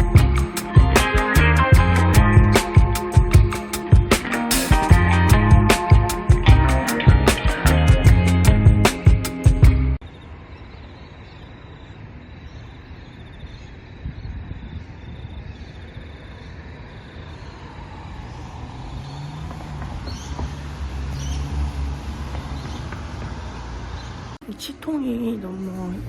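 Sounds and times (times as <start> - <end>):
background music: 0.0 - 10.0
outdoor background noise: 9.9 - 26.0
low vehicle rumble: 16.6 - 24.4.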